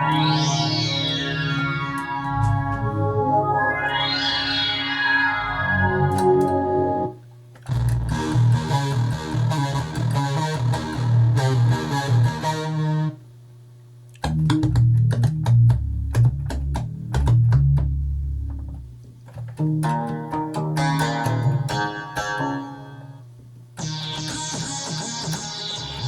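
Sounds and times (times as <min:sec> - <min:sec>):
low held synth tone: 0:00.0 - 0:07.3
plucked synthesizer pattern: 0:00.0 - 0:13.2, 0:14.2 - 0:18.8, 0:19.6 - 0:23.1, 0:23.8 - 0:26.0
synth bass line: 0:00.0 - 0:13.2, 0:23.8 - 0:26.0.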